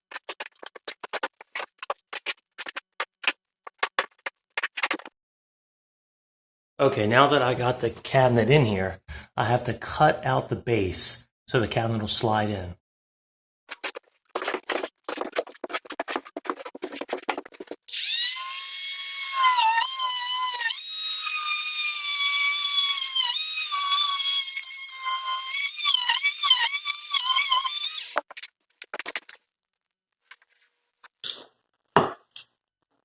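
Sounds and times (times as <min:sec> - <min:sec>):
power tool rasping strokes: 0:17.9 - 0:28.2.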